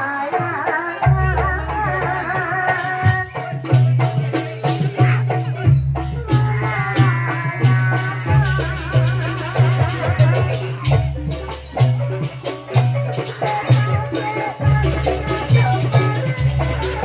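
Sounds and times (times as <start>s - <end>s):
drum and rattle strokes: 0.1s - 17.0s
ornamented melody: 8.2s - 17.0s.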